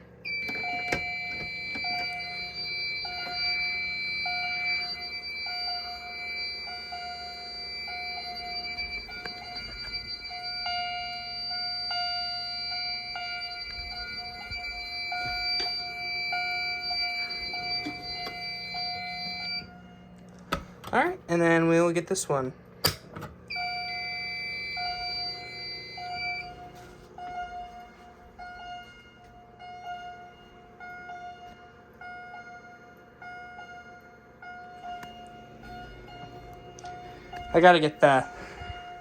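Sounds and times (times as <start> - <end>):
fire alarm chime: 0.0 - 20.3, 23.5 - 39.0
high-pitched electronic tone: 0.3 - 19.9, 23.5 - 29.2.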